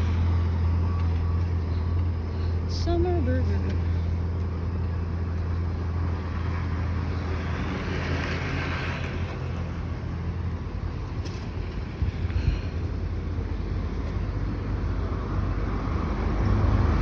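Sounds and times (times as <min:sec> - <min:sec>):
steady low traffic rumble: 0:00.0 - 0:17.0
vehicle passing close by: 0:05.8 - 0:17.0.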